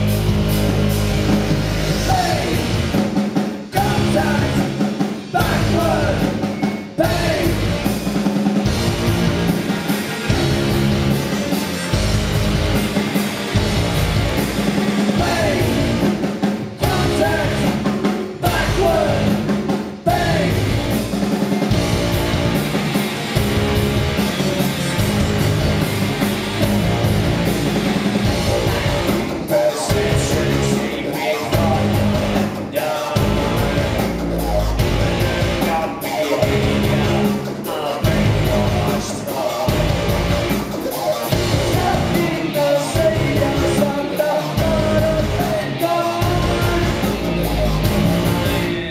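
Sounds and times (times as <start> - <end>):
rock band playing: 0.0 - 48.9
person singing: 2.0 - 2.8, 3.7 - 7.7, 15.2 - 16.2, 16.8 - 21.0, 28.4 - 40.3, 41.6 - 47.5, 48.3 - 48.9.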